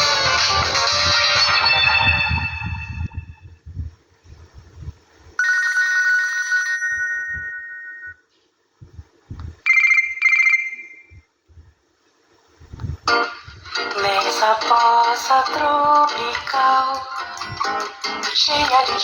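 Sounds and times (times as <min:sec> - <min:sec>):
phone electronic chime: 0:05.4 - 0:08.2, 0:09.7 - 0:11.2
phone trilling rings: 0:05.4 - 0:08.2, 0:09.7 - 0:11.1.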